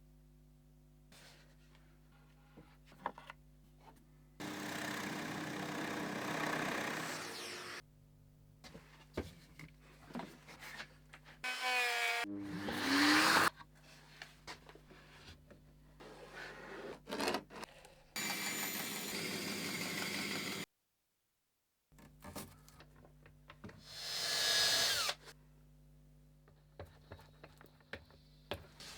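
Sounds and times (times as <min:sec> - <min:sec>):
power tool spinning up: 0:04.4 - 0:07.8, 0:11.5 - 0:13.5, 0:18.2 - 0:20.7, 0:24.0 - 0:25.3
power tool whirring: 0:04.4 - 0:07.8, 0:11.4 - 0:13.5, 0:18.2 - 0:20.7, 0:23.9 - 0:25.3
tool working wood: 0:04.4 - 0:07.8, 0:11.4 - 0:13.5, 0:18.2 - 0:20.6.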